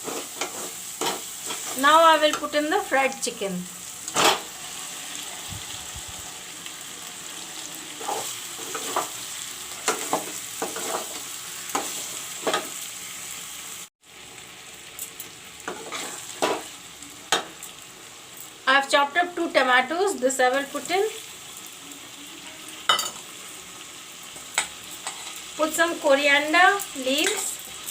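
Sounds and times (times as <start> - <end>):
spoon scraping a pan: 0.0 - 2.4, 8.0 - 9.2, 9.8 - 12.8, 15.6 - 16.7, 24.4 - 25.5, 27.1 - 27.6
chicken sizzling in oil: 0.0 - 27.9.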